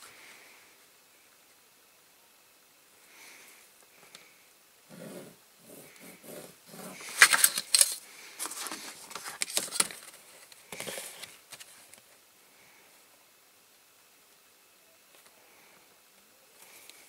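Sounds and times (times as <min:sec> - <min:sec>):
scraping strokes on card: 0:04.9 - 0:07.2.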